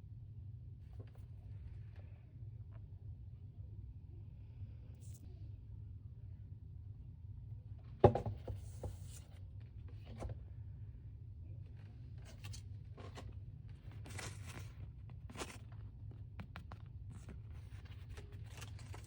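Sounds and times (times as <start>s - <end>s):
packaging rustling: 17.5s - 19.0s.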